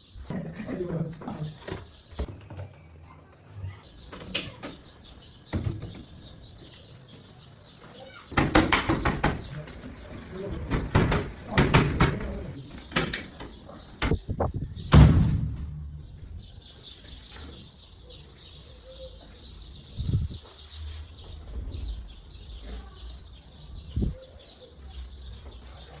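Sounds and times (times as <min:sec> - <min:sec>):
faint high chirping: 0:01.7 - 0:08.5
cabinet doors knocking shut: 0:08.4 - 0:09.5, 0:10.6 - 0:13.3.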